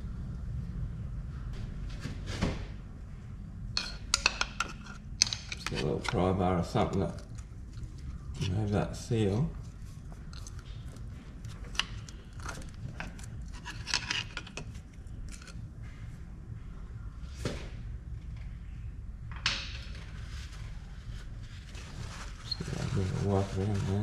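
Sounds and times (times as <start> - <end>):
steady low hum: 0.0 - 24.0
pry bar clicks and scrapes on metal: 3.8 - 6.2.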